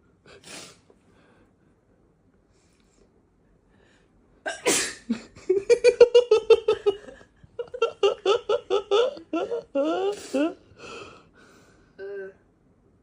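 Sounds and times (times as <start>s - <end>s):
woman sneezing: 4.5s - 5.1s
woman giggling: 5.1s - 10.6s.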